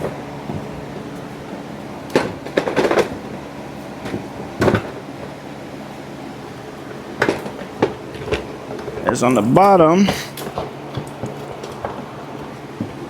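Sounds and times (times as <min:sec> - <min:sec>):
steady low hum: 0:08.7 - 0:13.0.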